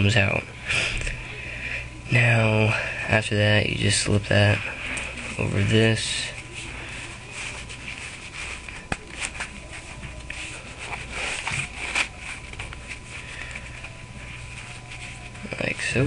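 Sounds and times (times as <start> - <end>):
steady low hum: 0.0 - 16.0
rustling handling noise: 4.0 - 16.0.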